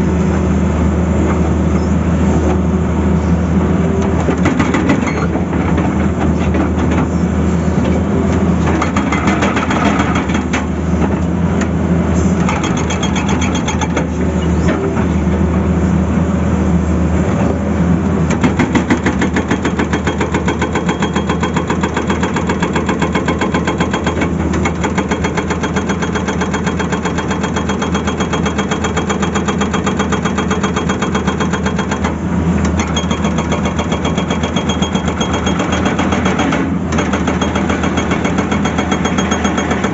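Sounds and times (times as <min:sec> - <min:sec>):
excavator diesel engine running: 0:00.0 - 0:39.9
hydraulic rock breaker hammering: 0:08.6 - 0:10.8, 0:18.3 - 0:39.9.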